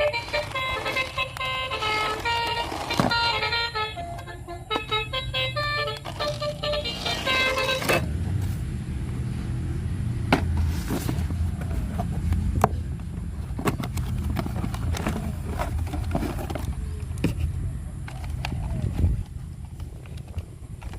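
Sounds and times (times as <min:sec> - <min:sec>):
electronic horn tune: 0:00.0 - 0:08.1.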